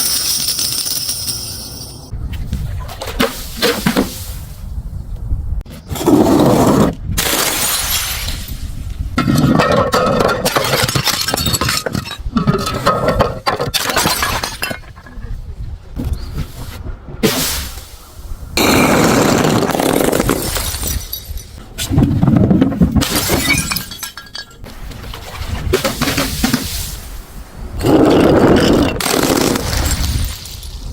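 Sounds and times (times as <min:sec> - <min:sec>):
glass bottles smashing: 0:00.0 - 0:02.1, 0:07.2 - 0:15.2, 0:18.6 - 0:21.6, 0:23.0 - 0:24.7
glass shards tinkling: 0:00.0 - 0:02.1, 0:20.4 - 0:21.6, 0:23.1 - 0:24.6.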